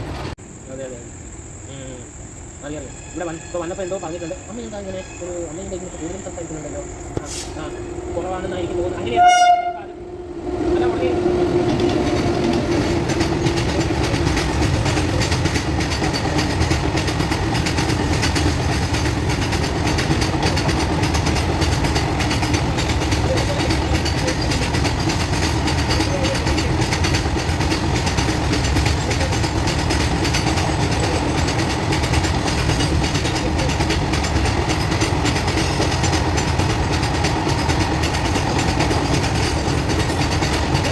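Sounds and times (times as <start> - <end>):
train wheels clattering over rail joints: 11.4 - 40.9.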